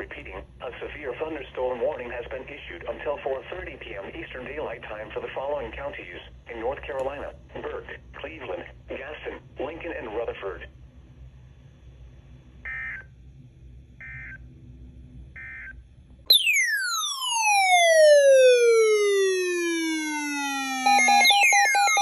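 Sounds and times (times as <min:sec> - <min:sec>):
falling whistle-like sweep: 0:16.3 - 0:22.0
steady pulsing tones: 0:16.3 - 0:22.0
warbling data bursts: 0:16.3 - 0:22.0.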